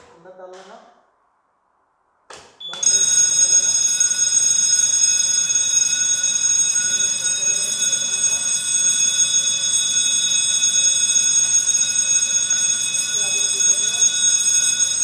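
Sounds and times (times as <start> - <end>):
fire alarm ringing: 2.7 - 15.0
faint voices: 6.1 - 15.0.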